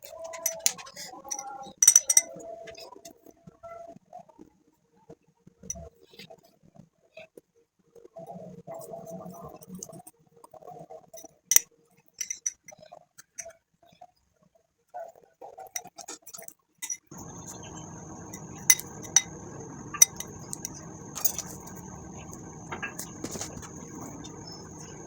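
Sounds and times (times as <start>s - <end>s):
spoon clinking against bowl: 1.3s - 2.3s, 12.2s - 12.6s, 16.8s - 25.0s
steady hiss with high whine: 17.2s - 25.0s.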